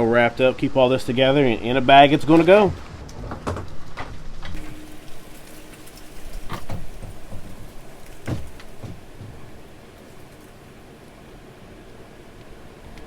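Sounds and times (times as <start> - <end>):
plastic bag crinkling: 2.5 - 10.7
light clicks and knocks: 6.0 - 10.5.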